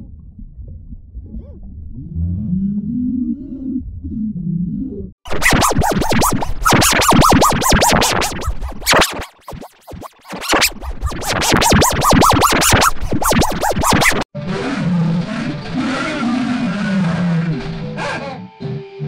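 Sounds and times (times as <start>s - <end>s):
steady noisy sound: 5.3s - 14.3s
stuttering electronic chirps: 5.3s - 14.3s.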